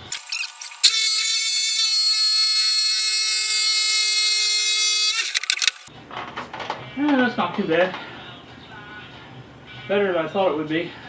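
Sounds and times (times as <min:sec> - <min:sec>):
jigsaw motor whining: 0:00.0 - 0:05.9.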